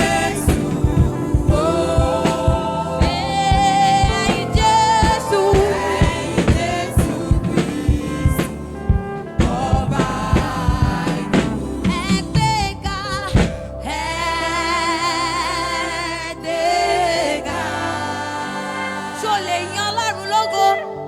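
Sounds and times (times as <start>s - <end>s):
instrumental accompaniment with beats: 0.0s - 13.7s
person singing with vibrato: 0.0s - 21.0s.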